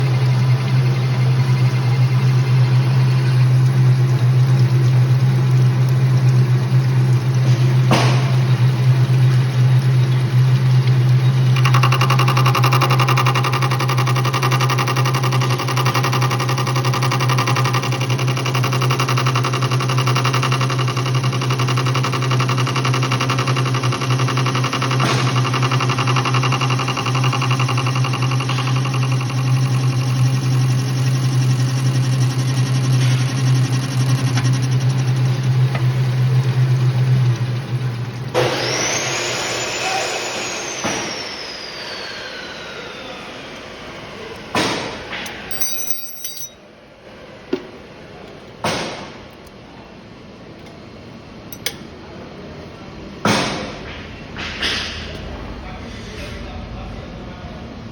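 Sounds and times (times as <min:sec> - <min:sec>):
whine winding down: 0:00.0 - 0:07.9, 0:08.5 - 0:44.5
machine tool humming: 0:00.0 - 0:46.6.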